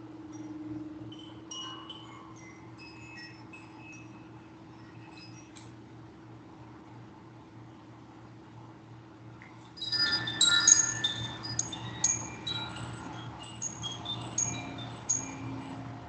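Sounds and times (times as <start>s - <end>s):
low steady hum: 0.0s - 16.0s
metal chimes ringing: 1.1s - 5.6s, 9.8s - 16.0s.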